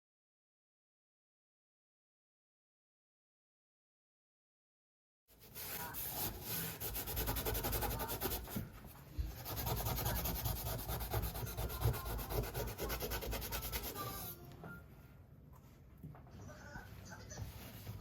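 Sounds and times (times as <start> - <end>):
rubbing or scraping by hand: 5.3 - 14.4.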